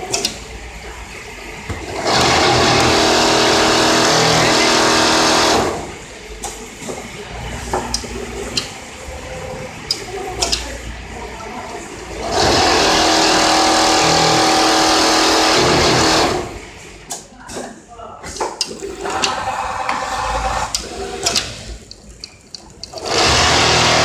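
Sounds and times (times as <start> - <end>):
sewing machine running: 1.8 - 6.2, 12.0 - 16.8, 18.8 - 21.7, 22.9 - 24.0
sharp clicks and clacks: 20.7 - 24.0.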